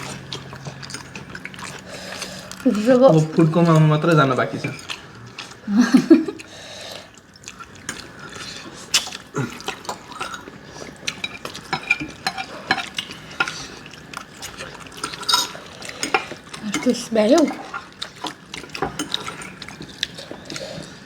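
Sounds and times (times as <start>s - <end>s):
utensils clicking against bowls: 14.2s - 20.6s.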